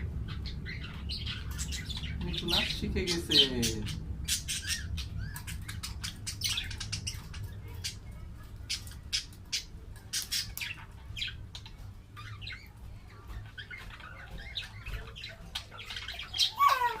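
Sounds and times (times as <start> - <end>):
parrot chirping and clicking: 3.8 - 17.0.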